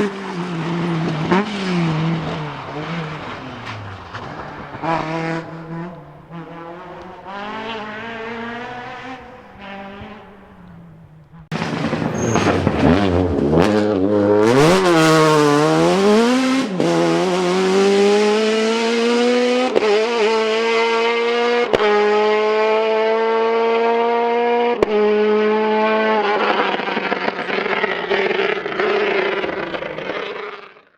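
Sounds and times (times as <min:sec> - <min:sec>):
rally car engine revving: 0:00.0 - 0:30.9
sharp cracks: 0:00.9 - 0:13.3.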